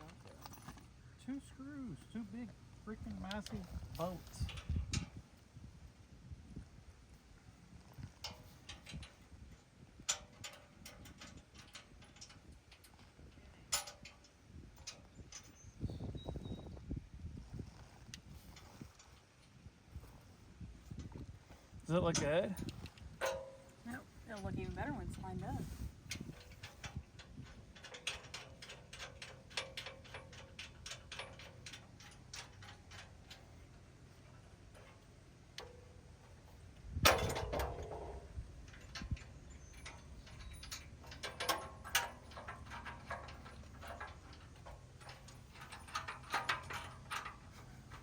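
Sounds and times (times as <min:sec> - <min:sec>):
metal clank: 0:22.0 - 0:24.6, 0:26.2 - 0:48.0.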